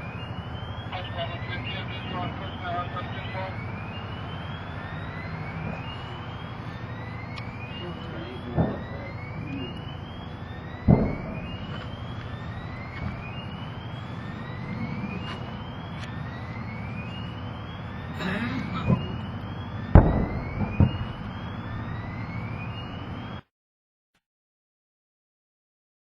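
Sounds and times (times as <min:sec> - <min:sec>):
rising alarm whoop: 0:00.0 - 0:23.4
steady low drone: 0:00.0 - 0:23.4
explosion booms: 0:07.9 - 0:09.3, 0:10.8 - 0:11.7, 0:19.9 - 0:22.0.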